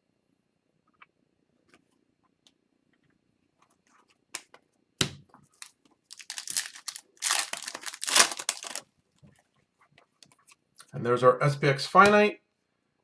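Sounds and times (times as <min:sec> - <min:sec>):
foil wrapper crinkling: 0:05.6 - 0:08.8
foil wrapper tearing: 0:05.6 - 0:08.8.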